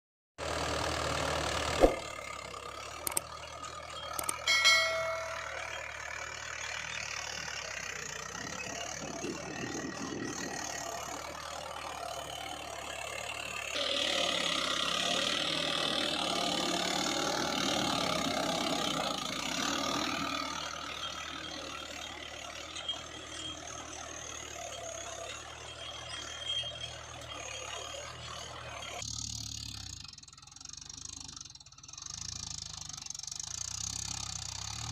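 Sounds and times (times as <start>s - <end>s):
tractor diesel engine running: 0.4s - 34.9s
sharp knock: 1.8s - 2.1s
short metallic ring: 4.0s - 6.4s.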